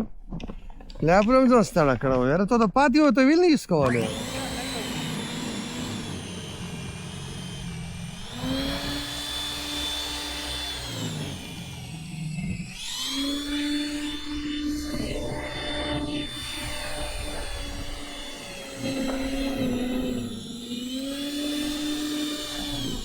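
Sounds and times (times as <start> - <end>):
motor whining: 3.7 - 23.0.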